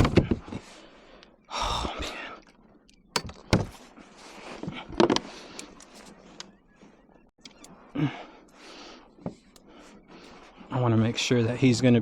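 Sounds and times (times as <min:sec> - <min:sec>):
clicks knocks and rattles on kayak: 0:00.0 - 0:00.6, 0:02.4 - 0:06.6.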